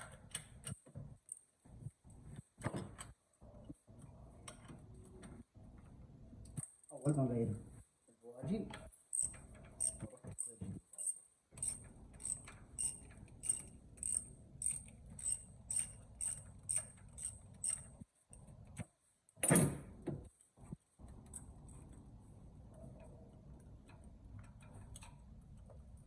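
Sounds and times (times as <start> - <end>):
ratchet wrench clicking: 9.1 - 17.9.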